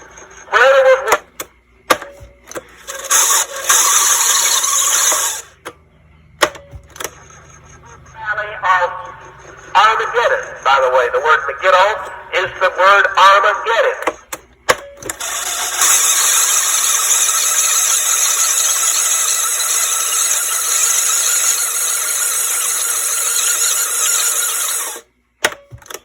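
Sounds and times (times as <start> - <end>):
tape winding whir: 1.1 - 5.8, 14.1 - 26.0.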